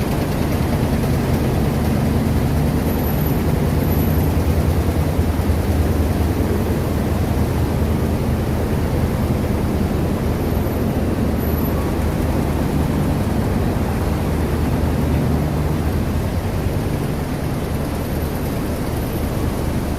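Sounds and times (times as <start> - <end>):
mill machinery droning: 0.0 - 19.9.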